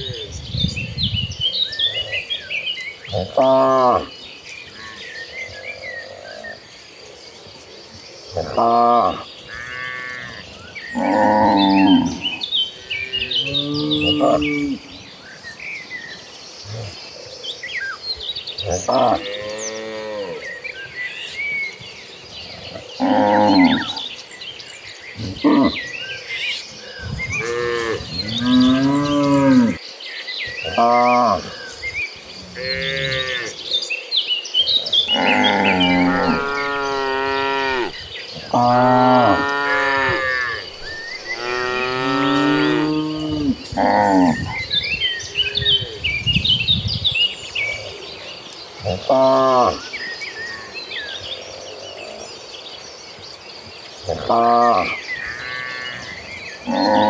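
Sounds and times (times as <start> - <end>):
cattle mooing: 27.4 - 29.8, 32.5 - 33.6, 35.1 - 44.5.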